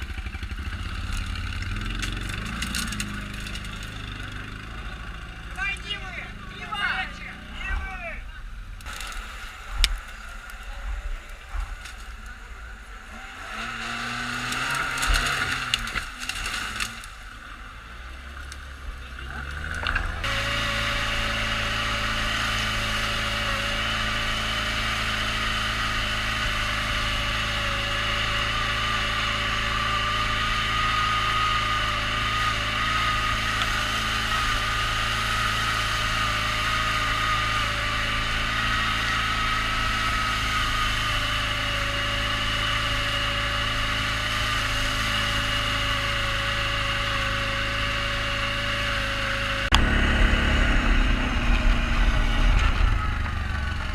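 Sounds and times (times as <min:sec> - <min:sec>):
engine whining steadily: 0:00.0 - 0:53.9.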